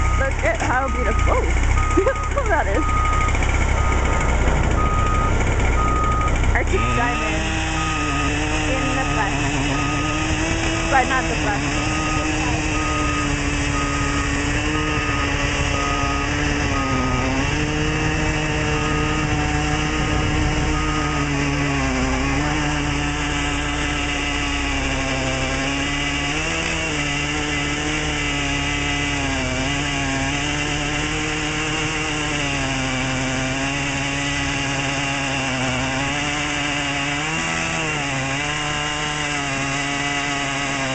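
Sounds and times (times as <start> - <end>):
reversing alarm beeping: 0.0 - 23.9
engine running: 0.0 - 40.9.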